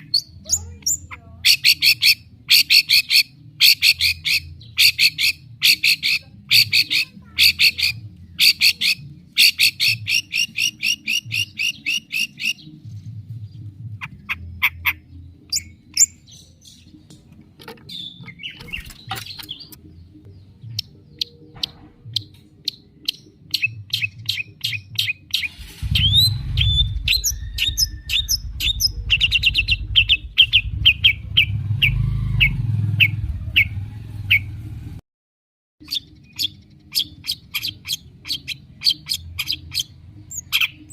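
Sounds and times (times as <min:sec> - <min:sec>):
shrike singing: 0:00.0 - 0:17.1, 0:17.7 - 0:34.5
low rumble: 0:25.5 - 0:35.0.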